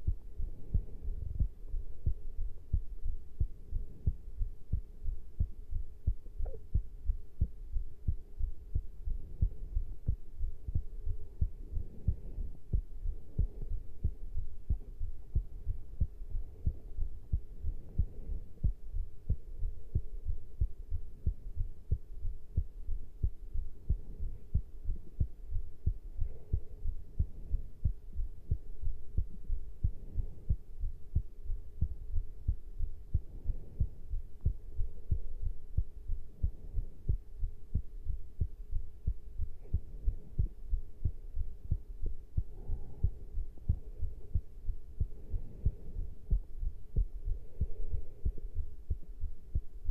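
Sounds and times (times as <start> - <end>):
faint steady hum: 0.0 - 49.9
heartbeat thumps: 0.0 - 49.9.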